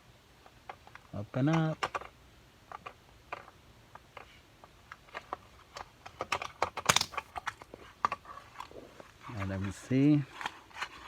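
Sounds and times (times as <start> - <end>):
plastic packaging crackling: 6.9 - 7.3.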